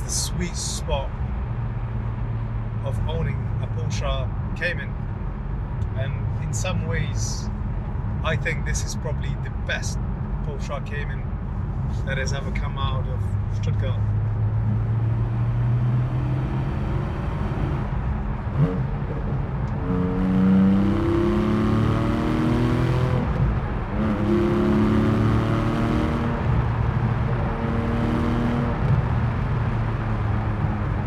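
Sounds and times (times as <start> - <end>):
sports car engine accelerating: 13.2 - 31.0.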